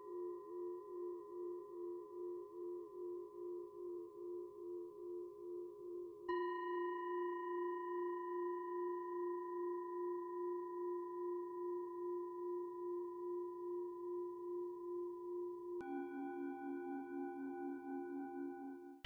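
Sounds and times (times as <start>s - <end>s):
singing bowl ringing: 6.3s - 19.0s.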